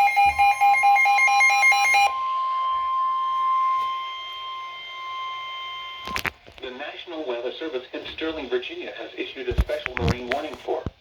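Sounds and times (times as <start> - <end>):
warbling electronic alarm beeps: 0.0 - 6.2
steady warning alarm tone: 0.0 - 7.8.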